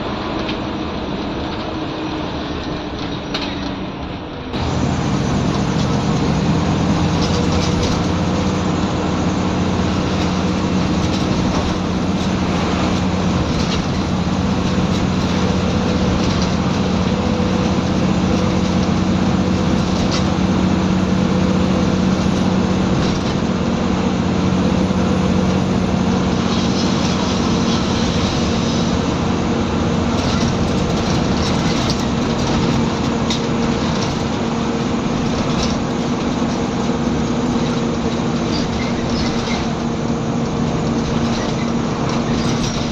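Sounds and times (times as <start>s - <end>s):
bus diesel engine under load: 0.0s - 42.9s.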